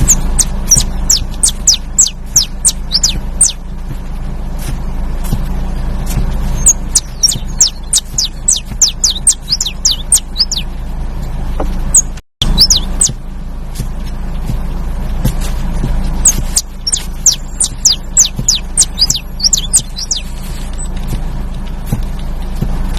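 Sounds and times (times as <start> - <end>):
finch singing: 0.0 - 3.8, 6.1 - 10.8, 11.6 - 13.2, 16.1 - 21.0
low hum: 0.0 - 22.9.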